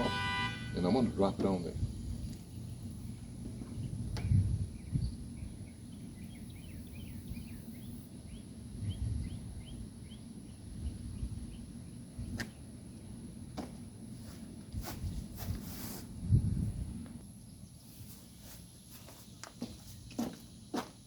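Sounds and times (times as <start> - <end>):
small bird chirping: 2.0 - 13.2.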